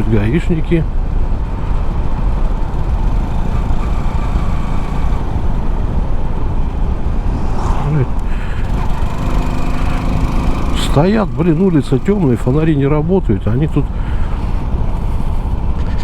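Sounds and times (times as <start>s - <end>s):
road noise: 0.0s - 16.0s
wind buffeting microphone: 5.2s - 10.4s.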